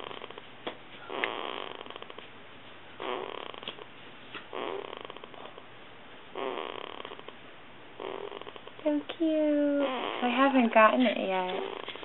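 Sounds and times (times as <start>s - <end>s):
baby snoring: 0.0s - 0.4s, 1.0s - 2.2s, 3.0s - 3.7s, 4.5s - 5.6s, 6.3s - 7.3s, 8.0s - 8.7s, 9.6s - 10.6s, 11.5s - 12.0s.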